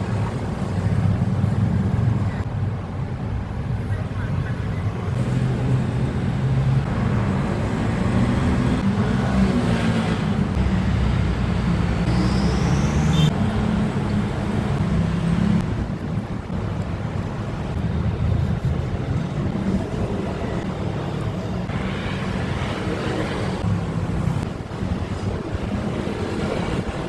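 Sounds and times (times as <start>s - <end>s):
traffic noise: 0.0s - 27.0s.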